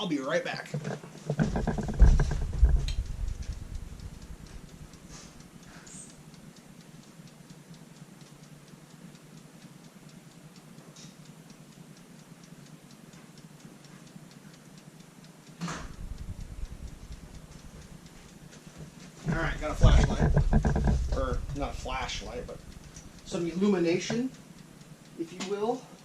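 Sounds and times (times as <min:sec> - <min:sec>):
rapid mechanism ticking: 0:00.0 - 0:26.0
low rumble: 0:01.4 - 0:05.1, 0:15.8 - 0:18.1, 0:19.3 - 0:23.5.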